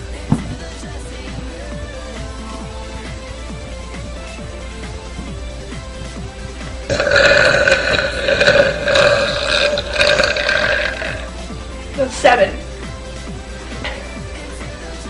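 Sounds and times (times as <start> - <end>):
background music: 0.0 - 15.0
girl's long burp: 6.9 - 11.4.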